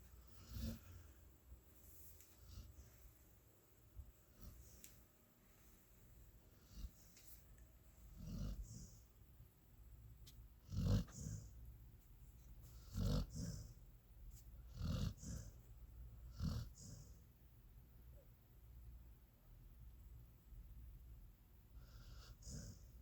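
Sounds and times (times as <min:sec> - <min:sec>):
small dog snoring: 0:00.3 - 0:01.0, 0:08.1 - 0:09.0, 0:10.6 - 0:11.6, 0:12.8 - 0:13.8, 0:14.7 - 0:15.6, 0:16.3 - 0:17.2, 0:21.8 - 0:23.0.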